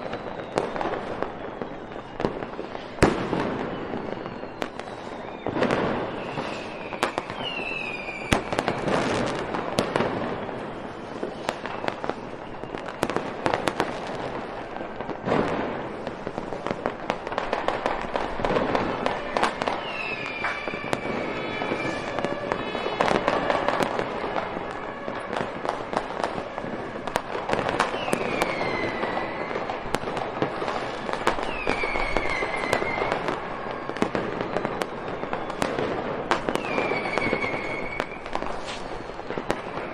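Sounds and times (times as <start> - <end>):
fireworks bangs and crackling: 0.0 - 39.9
fireworks whistles falling in pitch: 0.0 - 39.9.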